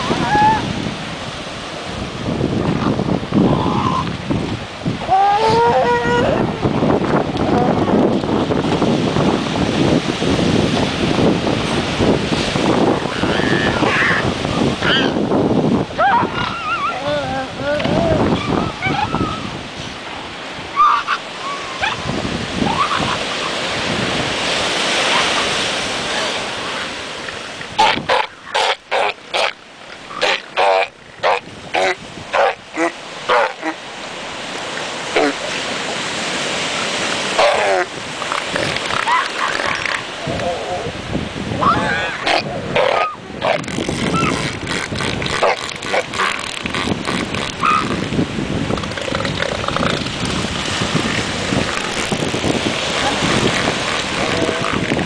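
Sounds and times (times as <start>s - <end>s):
ocean surf washing onto beach: 0.0s - 55.0s
elephant seal grunts and calls: 27.8s - 33.8s, 41.6s - 48.1s.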